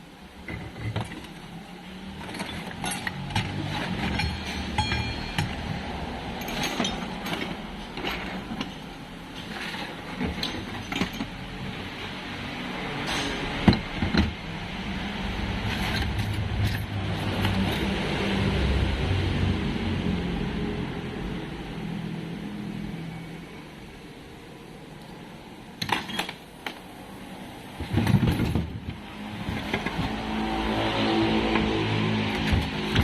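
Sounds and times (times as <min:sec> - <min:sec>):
metal clinks and knocks: 0:00.5 - 0:12.1, 0:27.8 - 0:33.0.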